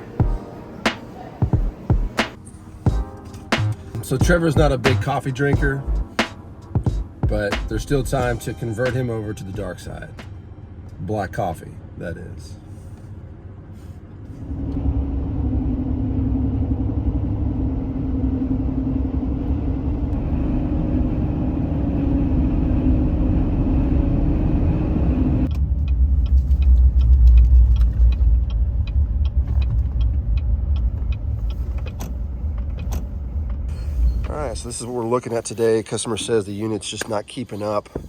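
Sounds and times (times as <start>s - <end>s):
vehicle engine and road rumble: 2.4s - 38.0s
regular ticking clicks: 25.5s - 33.6s.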